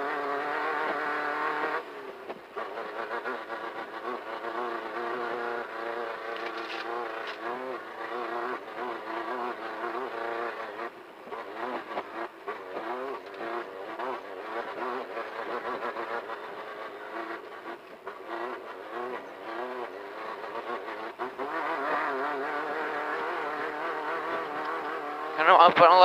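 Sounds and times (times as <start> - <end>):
race car engine revving: 0.0 - 26.0
car jolting over bumps: 6.2 - 7.5, 20.4 - 26.0.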